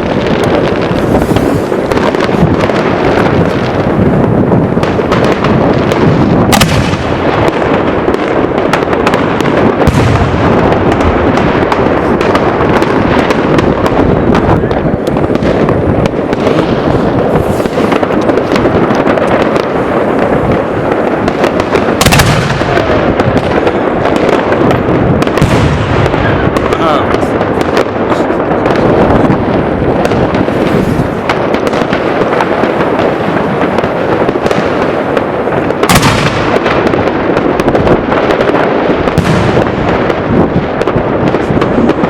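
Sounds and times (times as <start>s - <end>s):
fireworks crackling: 0.0s - 42.0s
loud firework bangs: 0.0s - 42.0s.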